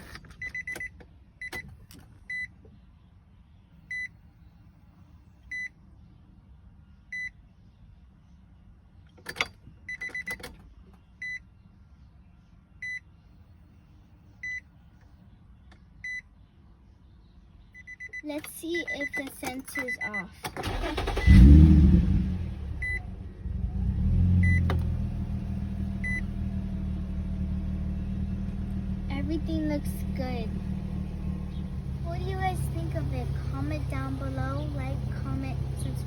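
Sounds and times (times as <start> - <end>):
car warning chime beeping: 0.3 - 2.6, 3.9 - 4.2, 7.1 - 7.4, 9.8 - 10.5, 11.2 - 11.5, 17.8 - 21.5, 22.7 - 23.1, 24.4 - 24.8, 26.0 - 26.4.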